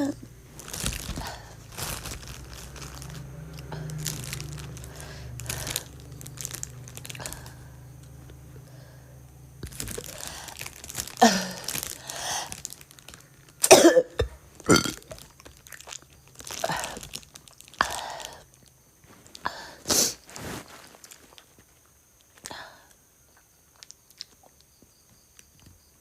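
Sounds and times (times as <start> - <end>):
woman coughing: 13.6 - 14.9
gagging retches: 13.6 - 15.4.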